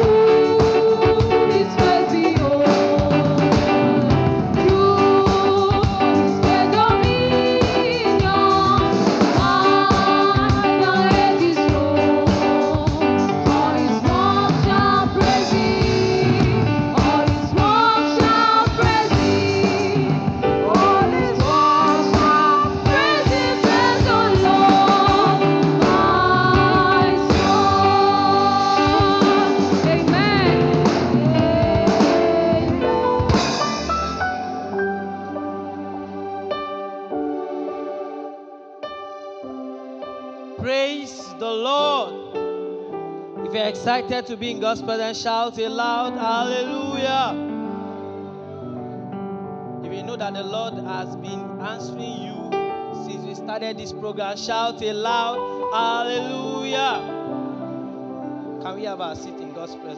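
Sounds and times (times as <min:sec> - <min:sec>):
drum kit: 0:00.0 - 0:35.7
guitar: 0:00.0 - 0:37.1
gospel singing: 0:00.0 - 0:42.5, 0:43.4 - 0:49.0, 0:49.8 - 0:59.9.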